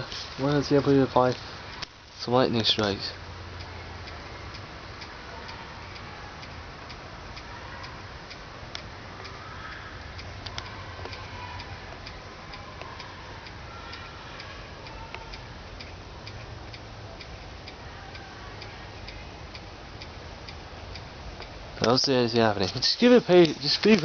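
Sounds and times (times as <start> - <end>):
faint distant voices: 0.0 - 24.0
steady ticking: 0.4 - 24.0.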